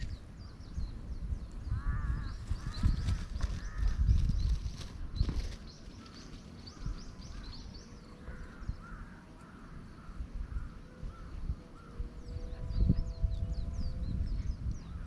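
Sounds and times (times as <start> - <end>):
forest birds calling: 0.0 - 15.0.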